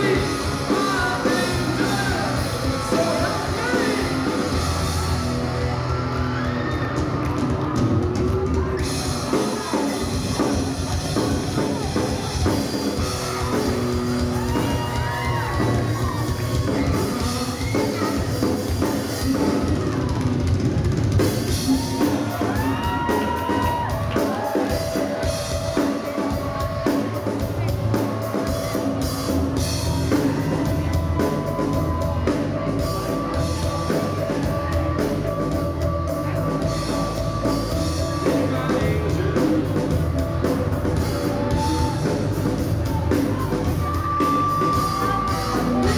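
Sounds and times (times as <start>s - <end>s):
person singing: 0.0s - 5.3s
drum kit beat: 0.0s - 45.9s
live rock band: 0.0s - 45.9s.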